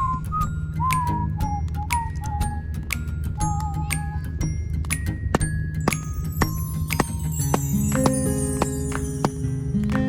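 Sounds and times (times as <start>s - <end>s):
low musical accompaniment: 0.0s - 10.0s
whistled melody: 0.0s - 10.0s
sharp percussion hits: 5.2s - 9.6s.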